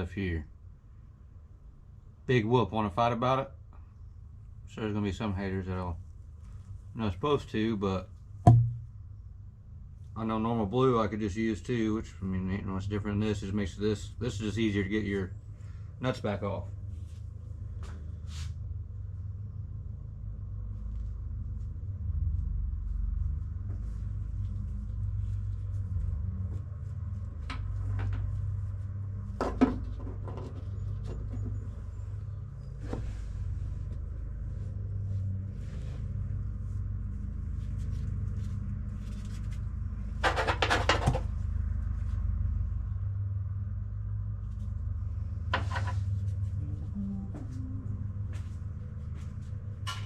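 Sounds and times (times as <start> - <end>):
steady low rumble: 3.1 - 29.4, 41.2 - 50.0.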